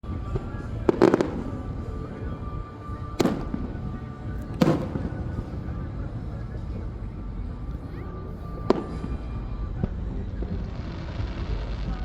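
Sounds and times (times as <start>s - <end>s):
fireworks bangs: 0.1s - 7.2s, 7.9s - 12.0s.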